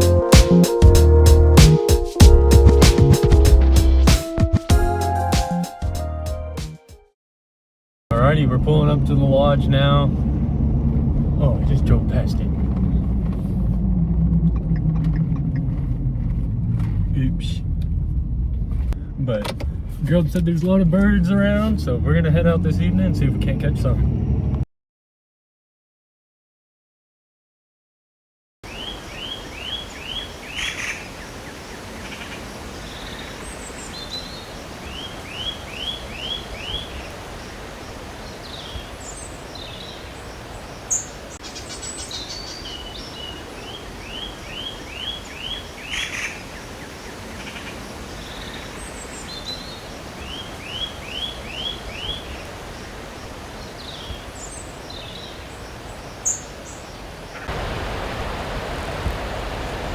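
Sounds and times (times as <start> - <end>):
songbirds chirping: 28.6 - 59.9.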